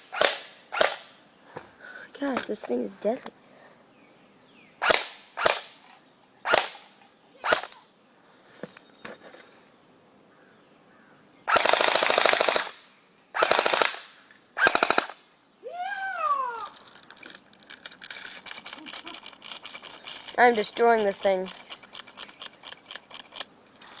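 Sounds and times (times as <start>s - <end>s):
airsoft rifle firing: 0.1s - 1.1s, 11.5s - 12.8s, 13.4s - 15.2s
falling pitched cry: 15.6s - 16.8s.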